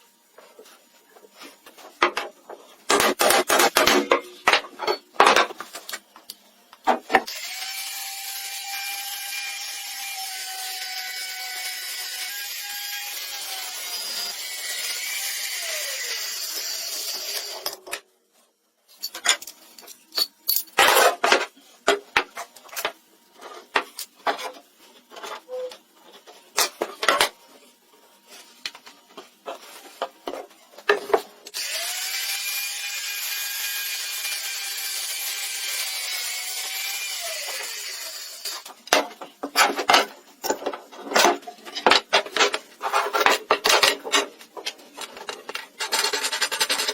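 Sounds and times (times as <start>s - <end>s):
power tool running on wood: 31.6s - 38.6s.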